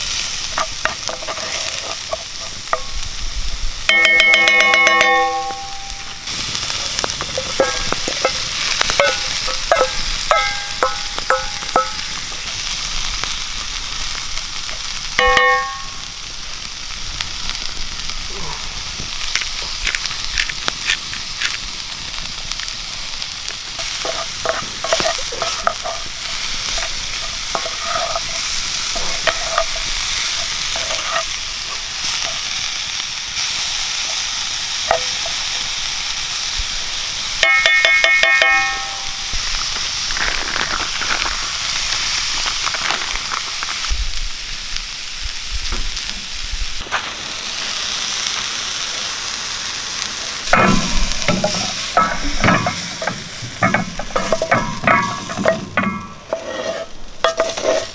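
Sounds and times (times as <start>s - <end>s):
utensil scraping a pan: 0.0s - 3.2s, 3.9s - 13.4s, 23.8s - 32.7s, 50.4s - 57.9s
food sizzling in a frying pan: 0.0s - 57.9s
light metallic pings: 3.9s - 6.3s, 7.5s - 12.3s, 15.2s - 16.1s, 37.4s - 39.4s
ringing metal clank: 3.9s - 6.3s, 7.5s - 12.3s, 15.2s - 16.1s, 37.4s - 39.4s, 50.5s - 57.6s.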